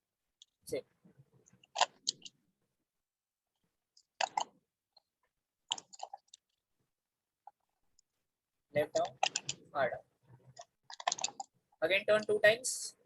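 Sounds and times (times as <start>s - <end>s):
plastic puzzle clicking: 4.0s - 4.6s, 8.9s - 9.6s, 10.6s - 11.5s.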